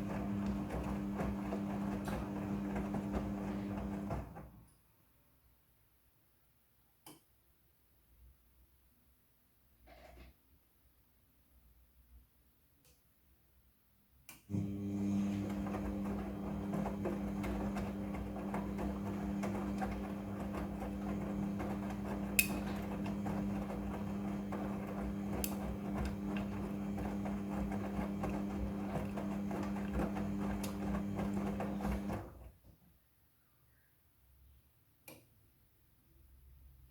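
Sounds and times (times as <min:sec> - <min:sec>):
washing machine motor humming: 0:00.0 - 0:04.5, 0:14.5 - 0:32.5.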